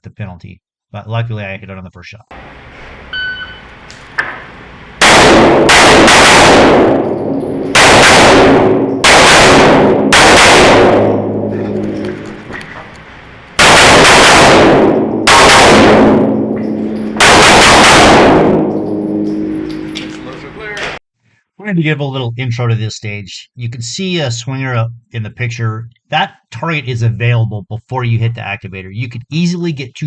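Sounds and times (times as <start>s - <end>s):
pistol shots with echo: 5.0s - 12.5s, 13.6s - 20.0s.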